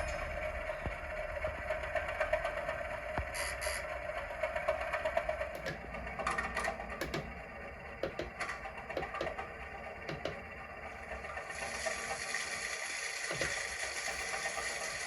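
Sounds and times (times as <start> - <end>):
irregular clicks and clunks: 4.7 - 10.6, 13.2 - 15.0.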